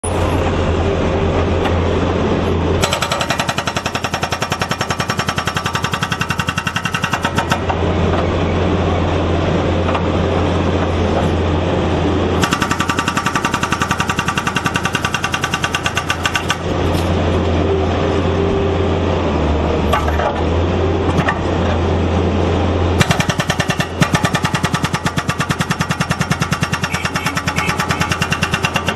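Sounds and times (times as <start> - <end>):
loader engine drone: 0.0 - 28.9
hydraulic breaker hammering: 2.8 - 7.8, 12.4 - 16.7, 19.9 - 20.5, 23.0 - 28.9.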